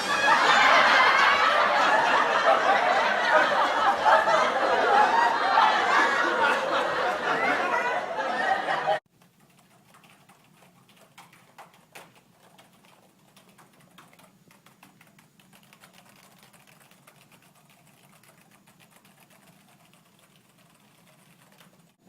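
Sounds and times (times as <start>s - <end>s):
voices and laughter: 0.0s - 9.0s
faint clicking and tapping: 9.1s - 22.0s.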